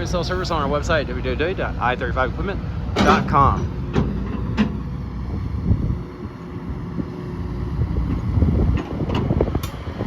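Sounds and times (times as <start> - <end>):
excavator diesel engine rumbling: 0.0 - 10.0
wind noise on microphone: 3.4 - 10.0.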